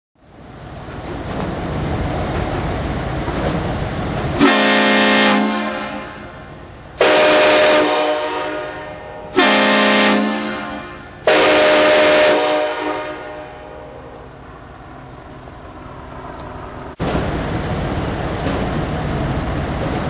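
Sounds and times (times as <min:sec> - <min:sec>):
train horn blasts: 0:04.4 - 0:06.4, 0:07.0 - 0:14.3.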